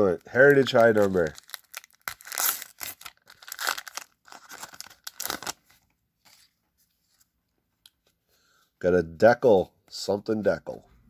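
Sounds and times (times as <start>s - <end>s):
wrapper tearing and crinkling: 0.2s - 5.7s.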